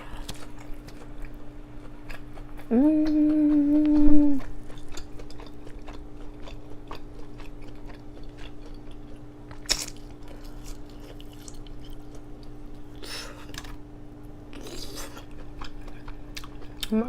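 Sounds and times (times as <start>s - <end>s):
crunchy chewing: 0.0s - 13.8s, 14.5s - 16.9s
loud crunching bite: 9.5s - 12.0s.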